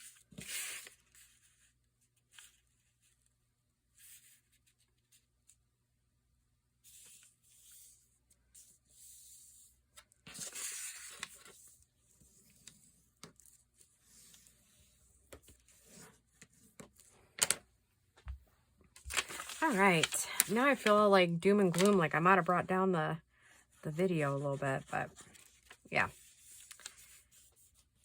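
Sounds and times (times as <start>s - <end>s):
paper rustling and sliding: 0.0s - 3.2s, 6.8s - 17.6s, 19.0s - 21.0s, 21.7s - 22.5s, 24.5s - 28.0s.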